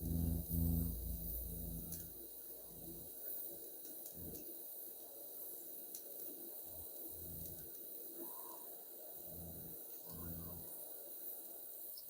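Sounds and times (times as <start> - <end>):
welding arc hissing: 0.0 - 3.2, 9.2 - 10.8.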